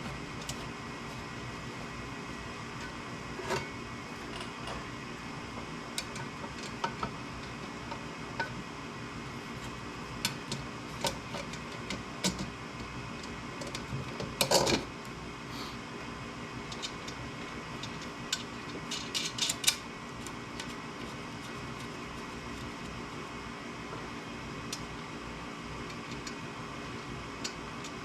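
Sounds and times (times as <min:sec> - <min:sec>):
steady background hum: 0:00.0 - 0:28.0
small tools clicking and tapping: 0:17.8 - 0:21.9, 0:25.9 - 0:26.4.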